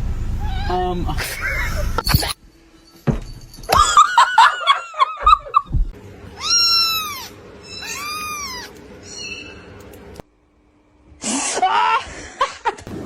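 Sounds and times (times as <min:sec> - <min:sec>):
cat meowing: 0:06.3 - 0:08.8
cat chirping: 0:06.4 - 0:09.7.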